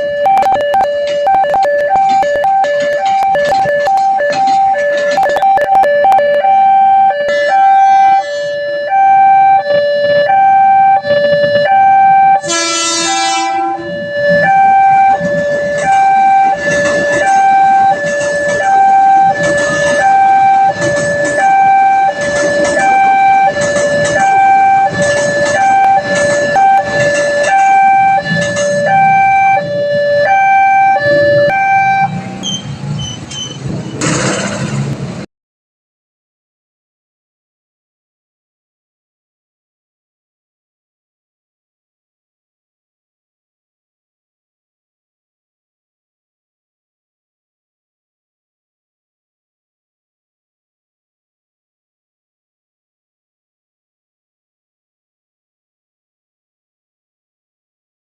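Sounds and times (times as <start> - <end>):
level crossing two-tone alarm: 0.0 - 32.7
horn blaring: 0.0 - 35.0
short high beeps: 0.2 - 6.4.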